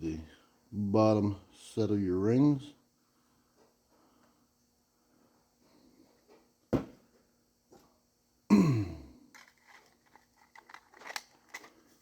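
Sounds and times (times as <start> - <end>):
man coughing: 8.5 - 9.2
metal parts clicking: 9.3 - 11.9.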